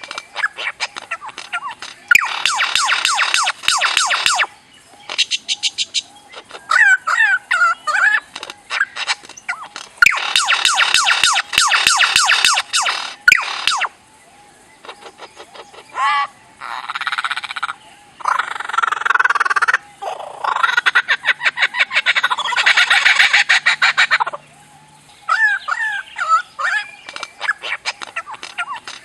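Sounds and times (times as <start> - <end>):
pulsed croaking animal calls: 0.0 - 4.5, 6.4 - 14.0, 14.8 - 24.4
warbling chirps: 2.1 - 4.5, 10.0 - 14.0.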